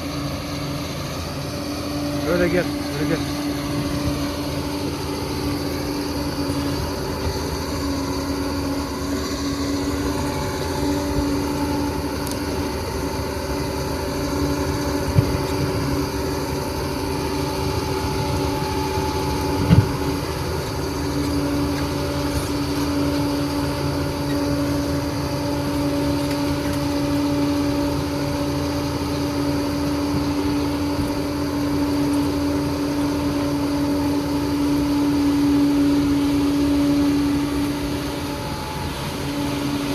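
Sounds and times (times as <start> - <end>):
steady machine hum: 0.0 - 39.9.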